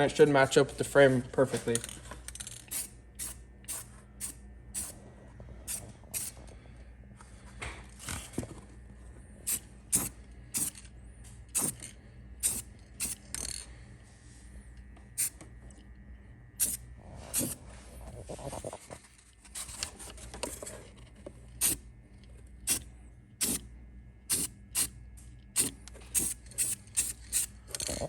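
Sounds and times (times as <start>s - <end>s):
spray can hissing: 5.7s - 6.3s, 9.5s - 10.8s, 11.6s - 11.8s, 12.4s - 13.2s, 16.6s - 16.8s, 25.6s - 27.5s.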